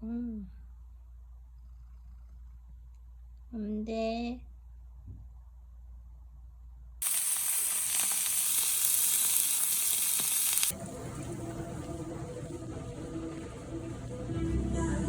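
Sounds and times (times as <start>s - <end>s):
food sizzling in hot oil: 7.0s - 10.8s
soft background music: 10.7s - 15.0s.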